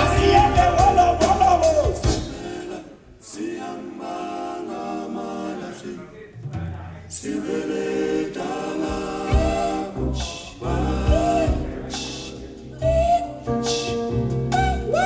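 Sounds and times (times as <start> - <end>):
bass line: 0.0 - 2.3, 9.3 - 15.0
voices singing in harmony: 0.0 - 6.4, 7.0 - 15.0.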